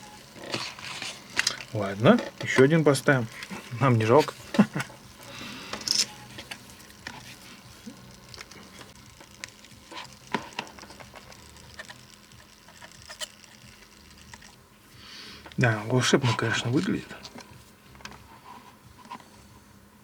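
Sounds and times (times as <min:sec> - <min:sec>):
small parts clicking and tapping: 0:00.0 - 0:14.6.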